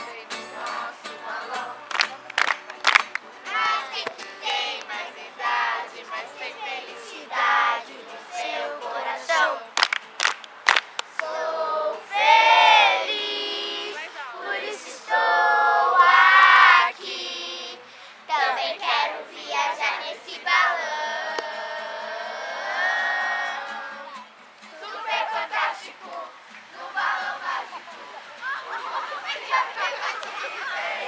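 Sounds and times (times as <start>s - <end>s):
children singing and chanting: 0.0s - 9.9s, 11.1s - 31.0s
sharp hand claps: 1.8s - 3.3s, 9.8s - 11.3s.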